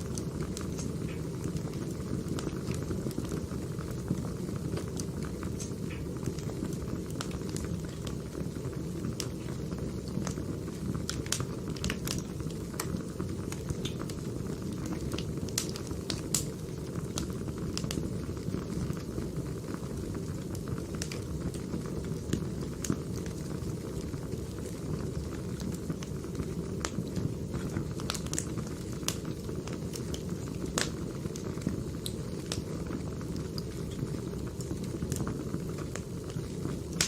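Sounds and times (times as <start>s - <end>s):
fire rumbling: 0.0s - 37.0s
logs crackling and popping: 0.0s - 37.0s.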